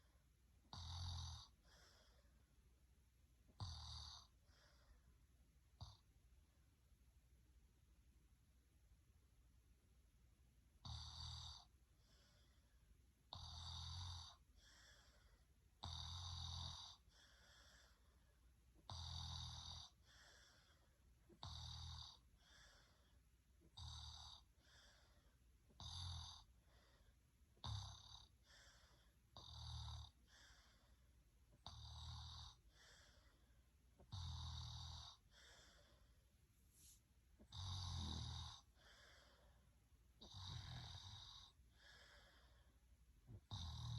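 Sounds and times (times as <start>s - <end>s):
soft breath: 1.6s - 2.6s, 11.9s - 12.9s, 14.5s - 15.5s, 17.0s - 18.4s, 19.9s - 21.0s, 22.4s - 23.2s, 24.4s - 25.4s, 26.5s - 27.2s, 28.4s - 29.2s, 30.2s - 31.2s, 32.6s - 33.7s, 35.2s - 37.2s, 38.6s - 39.8s, 41.5s - 42.8s
person snoring: 15.8s - 18.0s, 18.9s - 23.0s, 27.6s - 30.9s, 34.0s - 36.1s, 36.8s - 39.4s, 40.2s - 42.6s, 43.4s - 43.9s.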